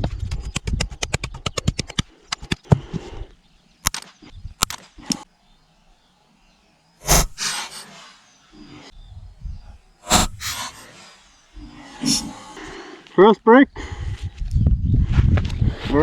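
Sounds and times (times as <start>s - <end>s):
knife knocks and blows: 7.0s - 7.8s, 10.1s - 10.9s.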